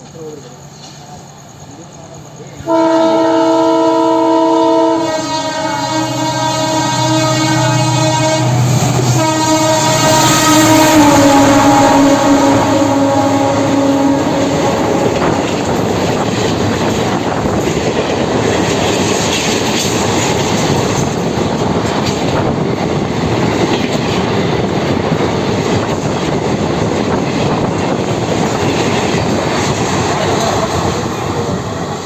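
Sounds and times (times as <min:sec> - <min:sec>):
train coaches rushing past: 0:00.0 - 0:32.0
wheels clattering over rail joints: 0:14.6 - 0:31.4.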